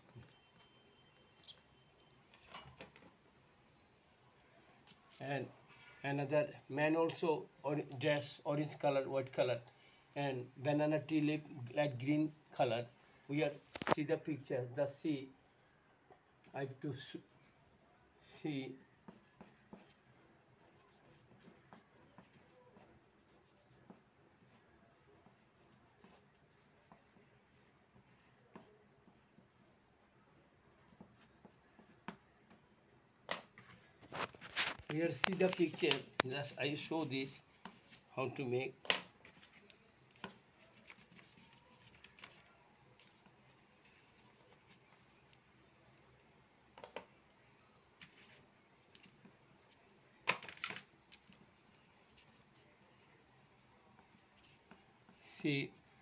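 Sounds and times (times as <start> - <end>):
paintbrush tapping and scratching paper: 16.4 - 29.8, 30.6 - 32.7, 33.3 - 45.5, 48.0 - 52.8, 53.9 - 56.0.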